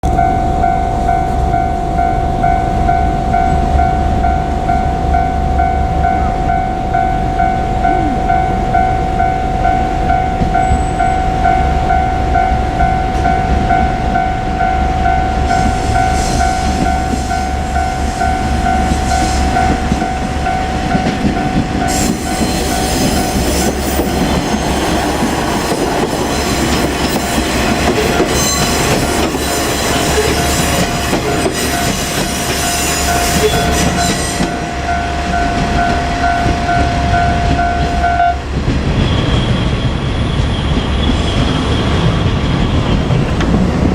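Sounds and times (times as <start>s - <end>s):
level-crossing warning bell: 0.0s - 43.1s
diesel railcar engine rumbling: 0.0s - 43.9s
train wheels clattering: 15.0s - 43.9s.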